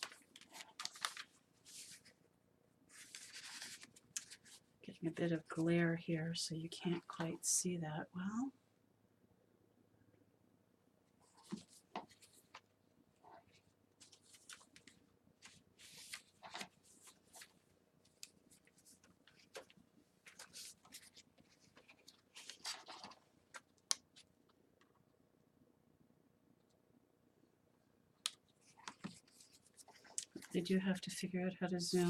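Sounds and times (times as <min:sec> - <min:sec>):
paper pages rustling: 0:00.0 - 0:02.2, 0:02.9 - 0:04.7, 0:11.2 - 0:24.4, 0:28.2 - 0:30.6.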